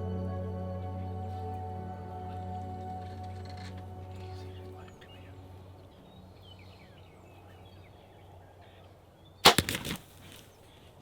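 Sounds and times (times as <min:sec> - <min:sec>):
background music: 0:00.0 - 0:05.8.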